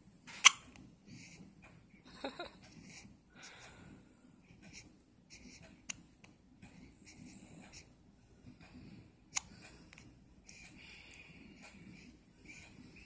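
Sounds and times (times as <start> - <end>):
baby hiccuping: 0.4 - 0.7.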